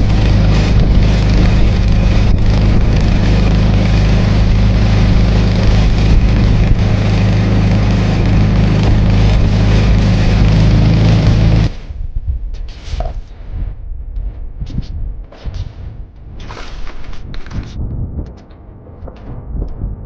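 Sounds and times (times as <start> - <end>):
outboard motor droning: 0.0 - 11.8.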